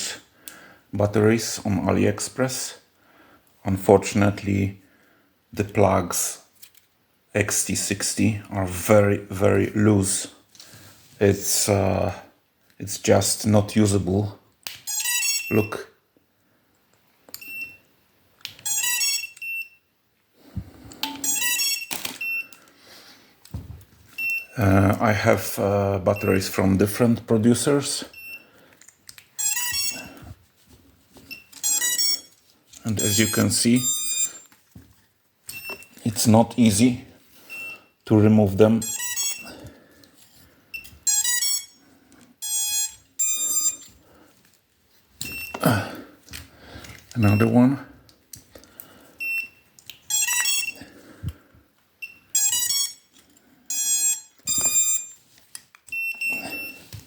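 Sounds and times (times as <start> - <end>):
short high beeps: 21.0 - 22.5, 29.4 - 30.0, 33.0 - 34.3, 42.4 - 43.8, 53.7 - 55.2.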